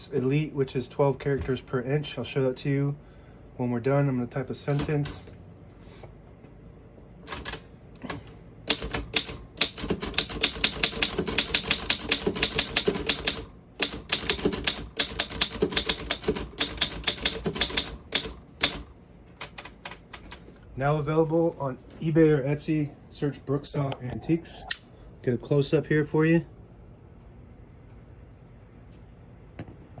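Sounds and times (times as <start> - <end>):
manual typewriter keystrokes: 4.7 - 5.2, 7.3 - 20.4.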